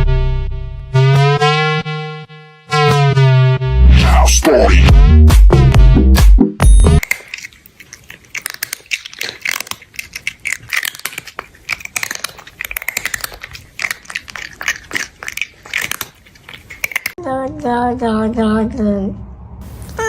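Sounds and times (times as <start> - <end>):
person chewing crunchy food: 7.0 - 17.2.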